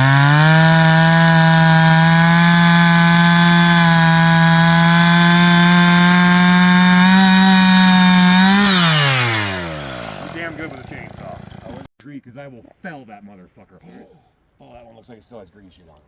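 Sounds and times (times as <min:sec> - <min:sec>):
chainsaw sawing through wood: 0:00.0 - 0:11.9.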